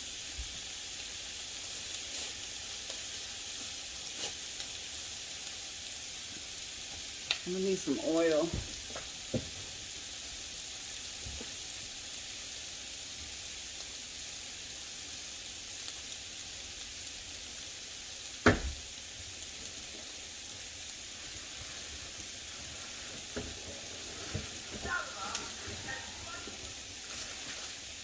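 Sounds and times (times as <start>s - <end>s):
chicken frying in oil: 0.0s - 28.0s
sharp knock: 18.4s - 18.8s.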